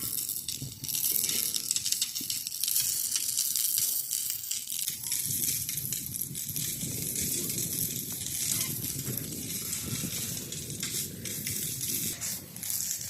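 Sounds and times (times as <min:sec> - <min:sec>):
dough sizzling in hot oil: 0:00.0 - 0:13.0
sharp crackles: 0:00.0 - 0:13.0.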